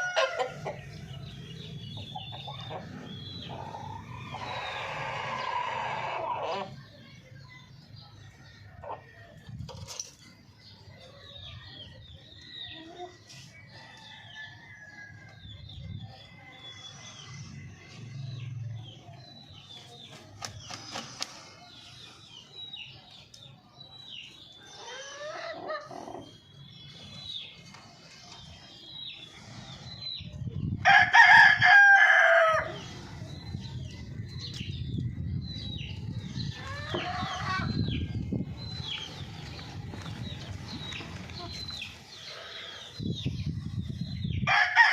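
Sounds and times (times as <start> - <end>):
chickens clucking: 0.0 - 7.0, 24.6 - 26.5, 35.9 - 43.8
rooster crowing: 30.9 - 32.8, 44.5 - 44.9.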